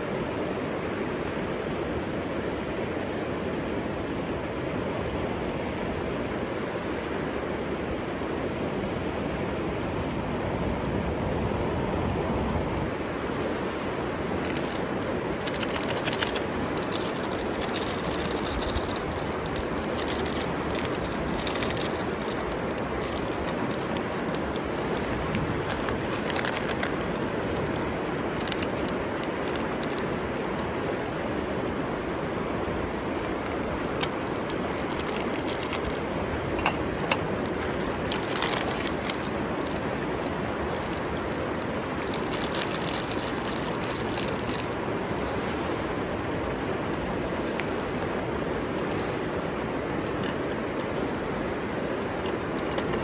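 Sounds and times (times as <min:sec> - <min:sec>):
flowing river water: 0:00.0 - 0:53.0
small crackles and clicks: 0:14.3 - 0:30.8, 0:33.2 - 0:51.4, 0:52.0 - 0:53.0.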